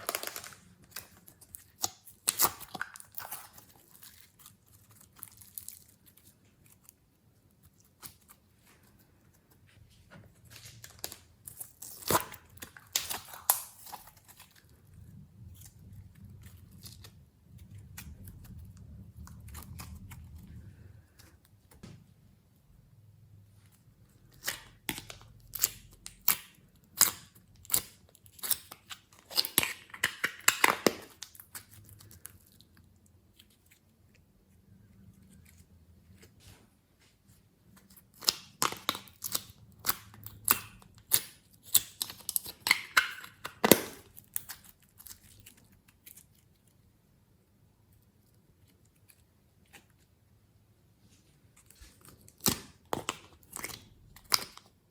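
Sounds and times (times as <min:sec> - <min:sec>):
slime squishing: 0:00.0 - 0:22.5, 0:51.2 - 0:54.9.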